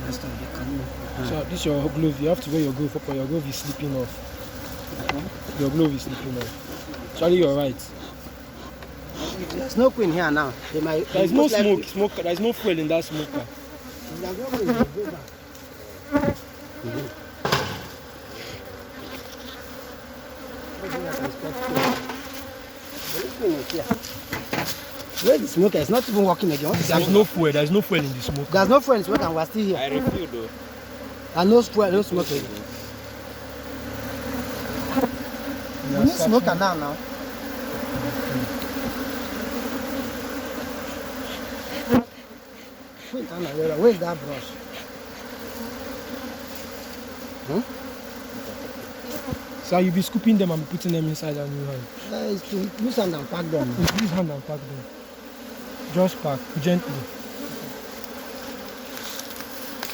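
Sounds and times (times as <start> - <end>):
bees buzzing: 0.0 - 59.9
sharp knock: 17.4 - 18.0.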